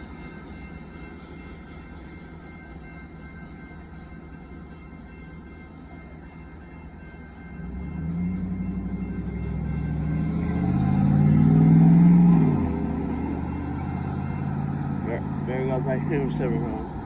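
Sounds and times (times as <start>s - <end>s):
large vehicle driving past: 7.6s - 15.5s.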